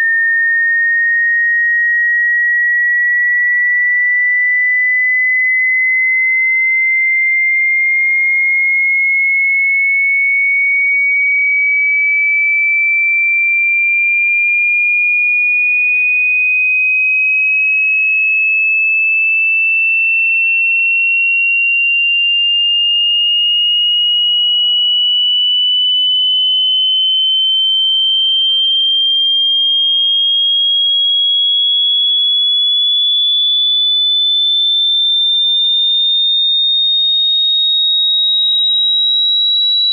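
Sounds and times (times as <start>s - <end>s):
rising sine tone: 24.0s - 34.4s.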